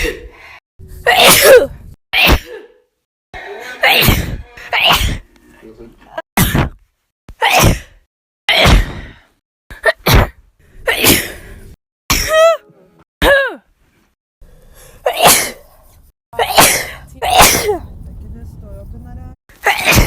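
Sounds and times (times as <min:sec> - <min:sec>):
woman sneezing: 0:01.1 - 0:01.7, 0:16.4 - 0:17.9.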